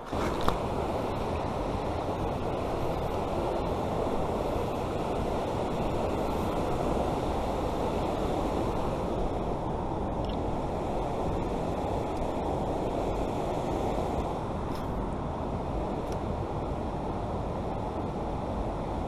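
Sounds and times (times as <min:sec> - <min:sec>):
creek water rushing: 0:00.0 - 0:17.7.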